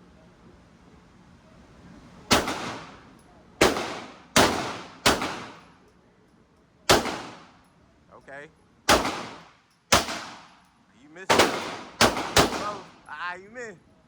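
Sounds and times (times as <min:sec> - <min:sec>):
gunshots: 0:02.3 - 0:03.0, 0:03.6 - 0:05.7, 0:06.9 - 0:07.5, 0:08.9 - 0:10.6, 0:11.2 - 0:13.0.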